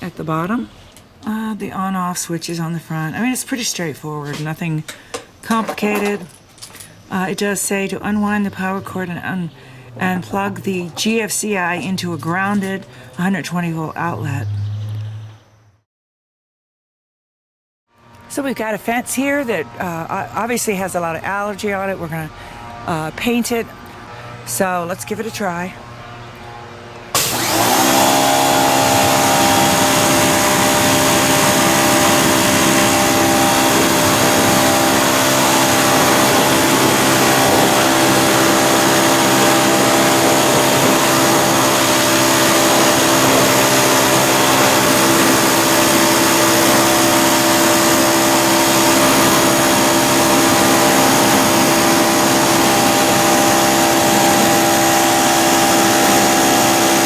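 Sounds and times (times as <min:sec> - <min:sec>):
pressure washer motor whine: 0:18.0 - 0:57.0
pressure washer hiss: 0:27.2 - 0:57.0.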